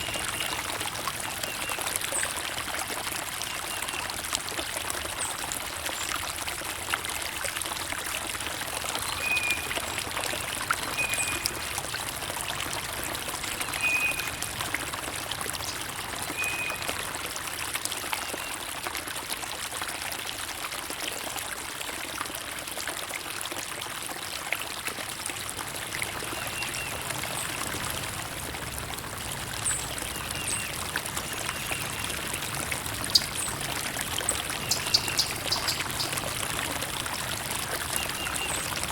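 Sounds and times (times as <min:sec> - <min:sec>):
water trickling and splashing: 0:00.0 - 0:38.9
bird chirps: 0:34.6 - 0:36.1.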